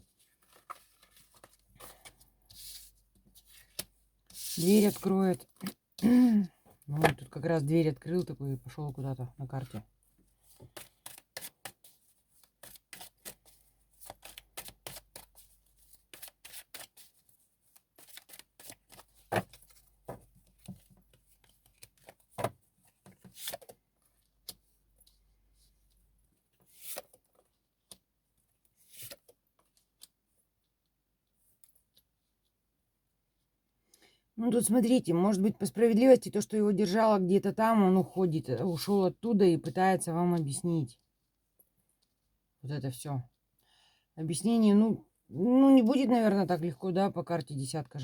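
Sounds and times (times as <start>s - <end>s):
cards being shuffled: 0.4s - 5.8s, 18.0s - 22.5s.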